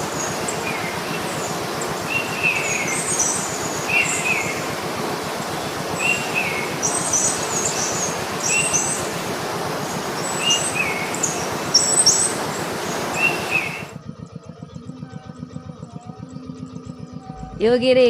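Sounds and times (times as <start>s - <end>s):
bird chirping: 0.0s - 4.8s, 5.5s - 9.2s, 9.8s - 13.9s
steady rushing noise: 0.0s - 14.0s.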